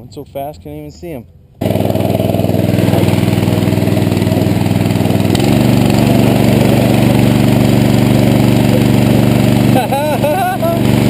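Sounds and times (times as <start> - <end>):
small gasoline engine running: 1.6 - 11.0.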